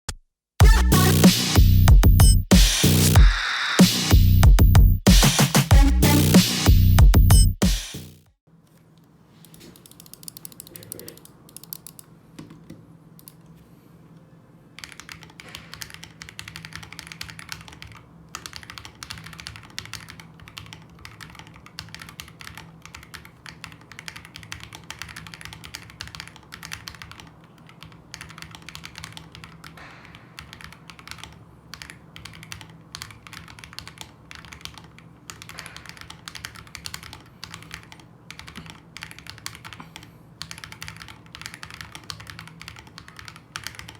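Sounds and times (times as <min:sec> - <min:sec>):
mechanical keyboard clicks: 0:09.4 - 0:12.1, 0:14.8 - 0:43.9.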